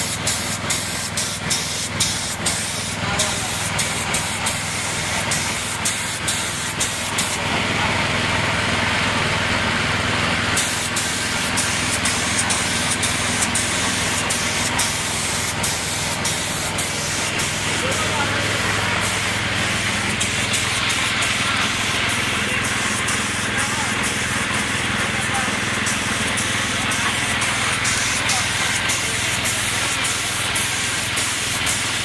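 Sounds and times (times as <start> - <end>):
paint spray gun hissing: 0.0 - 32.0
steady low hum: 9.3 - 29.2.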